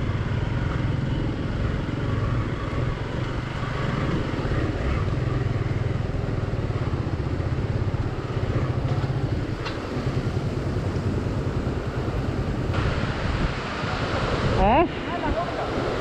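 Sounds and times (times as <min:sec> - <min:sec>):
motorcycle engine running: 0:00.0 - 0:13.1.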